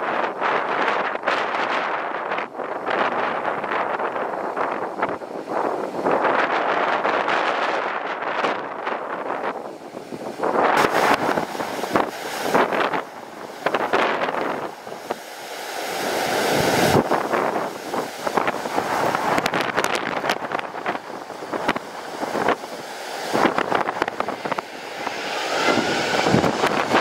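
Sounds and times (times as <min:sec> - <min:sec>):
gusty wind buffeting microphone: 0:00.0 - 0:27.0.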